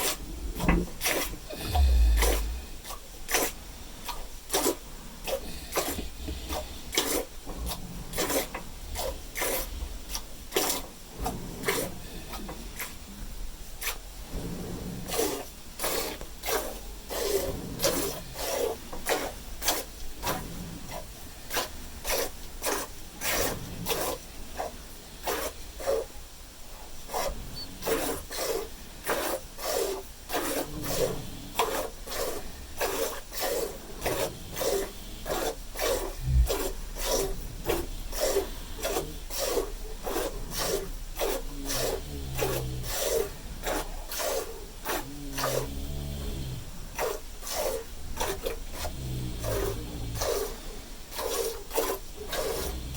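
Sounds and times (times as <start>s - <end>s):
milk squirting into a pail: 4.5s - 10.9s.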